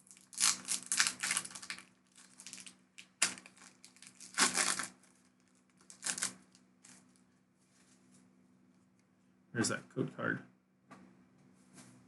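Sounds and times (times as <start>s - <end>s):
foil wrapper crinkling and tearing: 0.0s - 7.2s.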